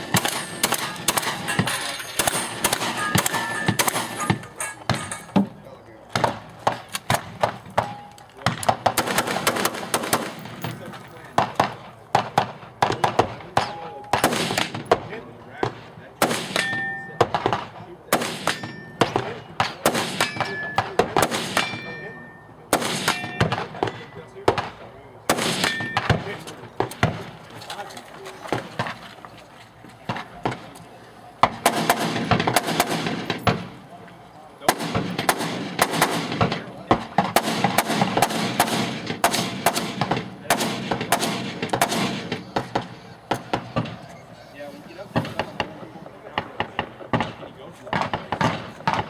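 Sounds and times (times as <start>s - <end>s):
gunshots: 0.0s - 5.3s, 6.1s - 27.4s, 31.4s - 33.9s, 34.6s - 44.0s, 45.1s - 49.0s
steel targets clanging: 0.0s - 5.7s, 6.4s - 11.6s, 16.4s - 17.4s, 18.2s - 24.3s, 25.3s - 29.0s.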